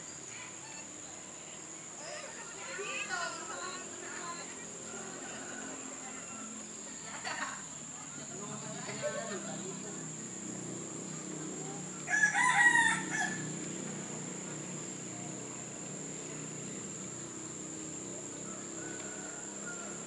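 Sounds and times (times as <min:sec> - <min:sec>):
rooster crowing: 0:04.8 - 0:07.0, 0:12.0 - 0:13.6, 0:18.3 - 0:20.0.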